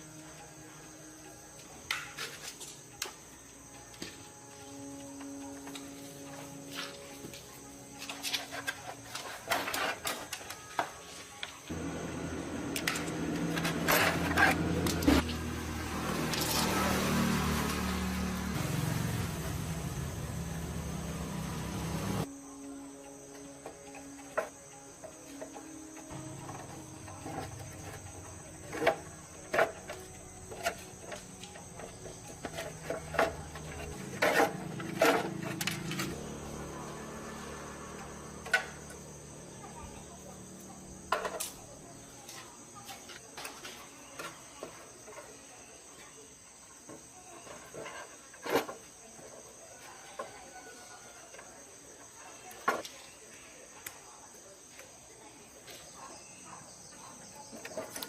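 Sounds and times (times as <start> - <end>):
insect trill: 0.0 - 58.0
motor humming: 11.7 - 22.3.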